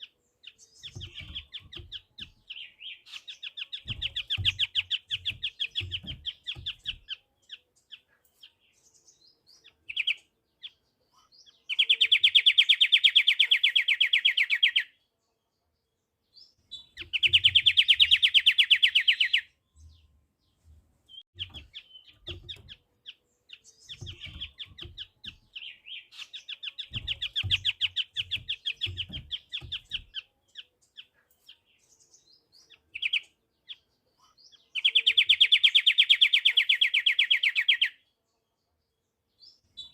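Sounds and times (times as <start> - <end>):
bird trilling: 0.9 - 7.2, 17.0 - 19.5, 23.9 - 30.2.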